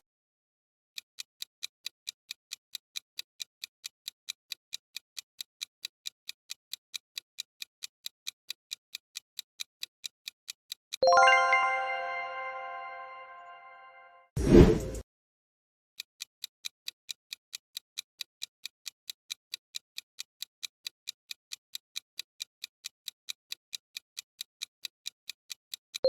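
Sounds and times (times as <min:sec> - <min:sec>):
ringing bell chime: 0:11.0 - 0:14.1.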